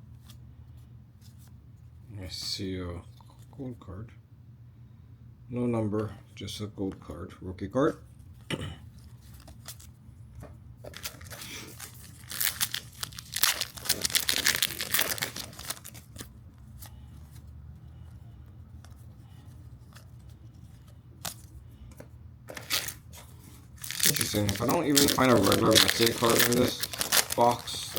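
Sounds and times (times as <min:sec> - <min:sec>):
cards clicking and rustling: 0:09.0 - 0:17.4, 0:19.8 - 0:27.9
foil wrapper tearing: 0:10.9 - 0:16.3, 0:22.5 - 0:23.1, 0:23.8 - 0:27.9.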